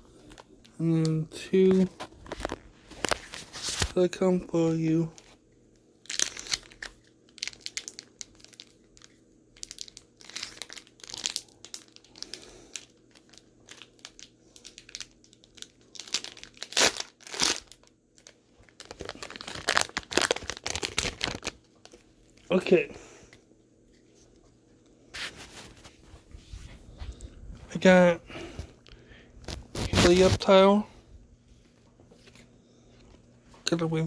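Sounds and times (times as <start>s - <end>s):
foil wrapper crinkling and tearing: 6.0s - 22.7s, 28.8s - 30.6s.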